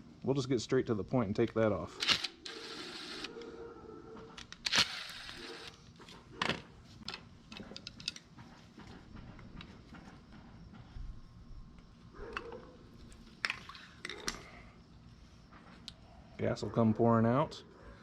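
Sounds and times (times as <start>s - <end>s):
metal tools clicking and knocking: 7.0s - 8.4s.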